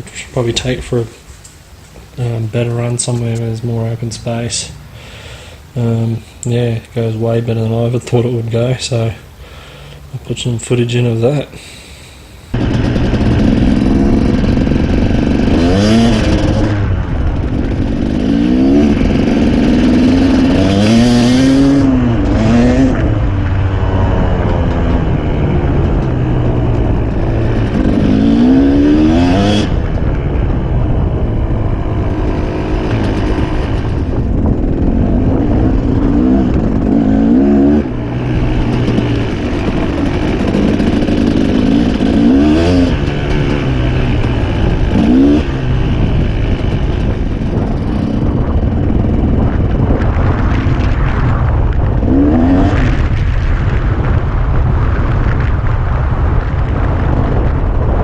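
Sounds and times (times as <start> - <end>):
dirt bike engine revving: 12.5 - 58.0.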